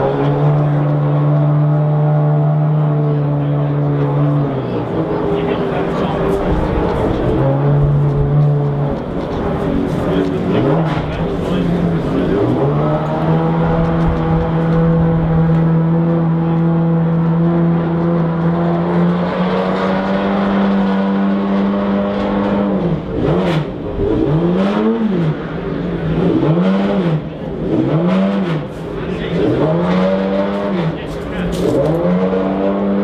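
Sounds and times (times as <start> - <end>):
engine revving: 0.0 - 33.0
race car engine idling: 2.5 - 18.5, 28.6 - 29.6, 30.5 - 32.0.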